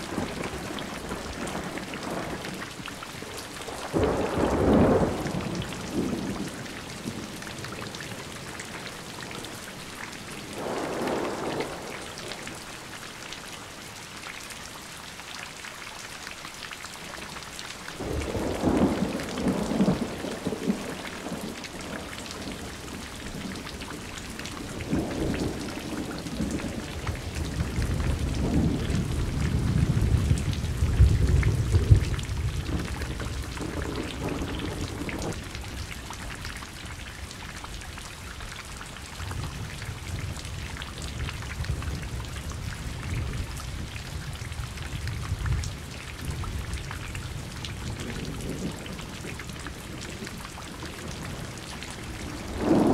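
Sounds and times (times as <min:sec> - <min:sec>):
steady rain: 0:00.0 - 0:52.9
rolling thunder: 0:03.8 - 0:07.3, 0:10.5 - 0:12.6, 0:24.6 - 0:35.8, 0:48.0 - 0:52.9.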